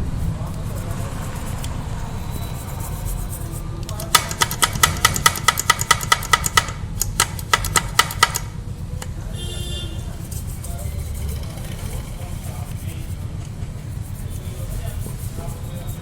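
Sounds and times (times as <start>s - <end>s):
low steady rumble: 0.0s - 4.2s, 6.7s - 16.0s
ringing metal-on-metal taps: 4.0s - 8.6s.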